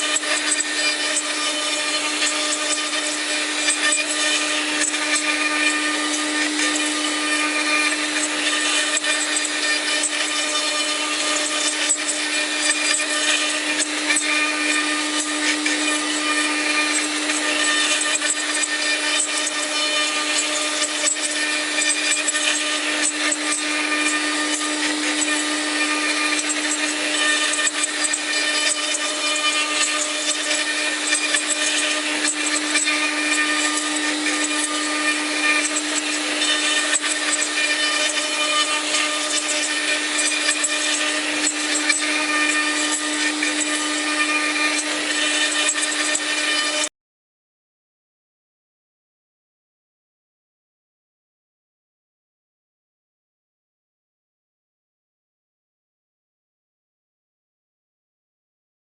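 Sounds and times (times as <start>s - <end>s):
spindle hum: 0.0s - 46.8s
machine cutting wood: 0.0s - 46.9s.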